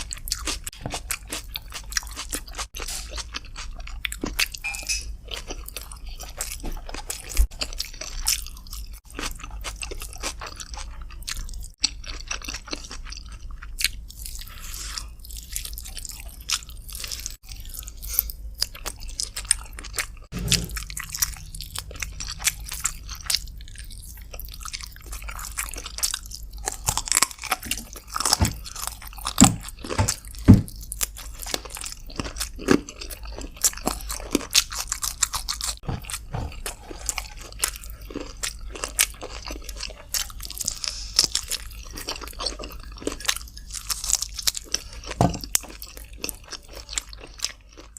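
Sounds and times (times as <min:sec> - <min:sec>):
person chewing food: 0:00.0 - 0:47.9.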